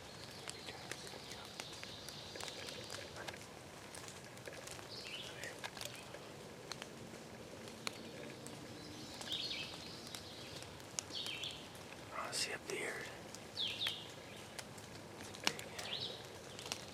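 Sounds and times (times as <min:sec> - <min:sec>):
small bird singing: 0:00.0 - 0:03.2, 0:04.6 - 0:06.2, 0:07.8 - 0:14.6, 0:15.4 - 0:16.9.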